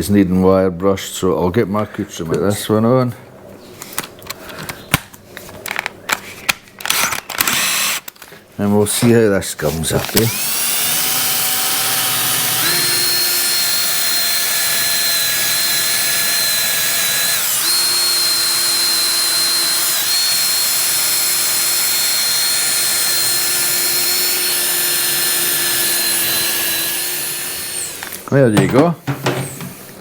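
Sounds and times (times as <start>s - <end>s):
electric drill motor whine: 7.4s - 8.0s, 10.2s - 28.3s, 29.1s - 30.0s.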